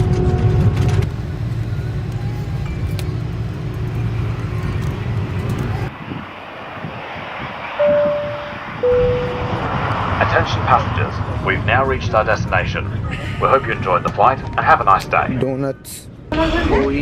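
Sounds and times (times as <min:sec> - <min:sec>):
jet engines rumbling: 0:00.0 - 0:15.4.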